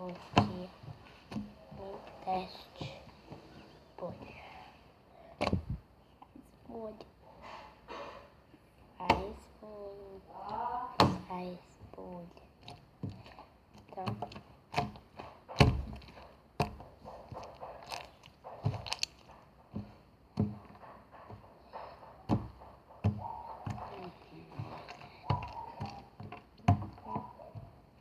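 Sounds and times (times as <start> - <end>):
slime popping and clicking: 17.4 - 19.3.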